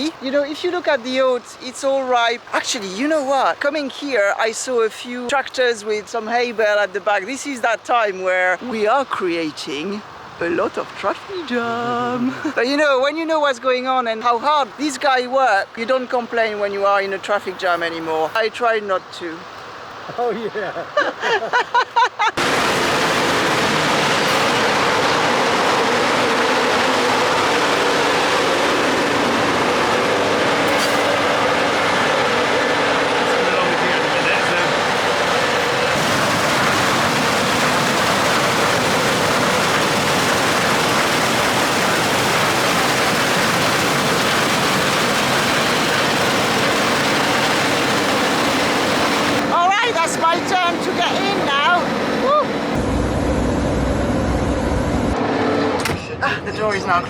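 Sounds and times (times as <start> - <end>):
combine harvester running: 22.4 - 57.0.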